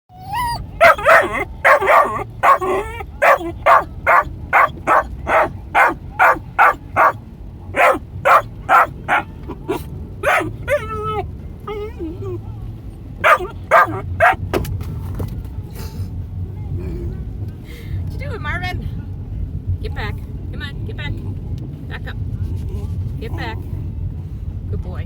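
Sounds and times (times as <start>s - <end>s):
puppy whining: 0.1s - 7.2s, 7.8s - 12.4s, 13.2s - 14.4s
low steady rumble: 0.1s - 25.0s
puppy barking: 0.2s - 7.2s, 7.8s - 11.2s, 13.2s - 14.4s.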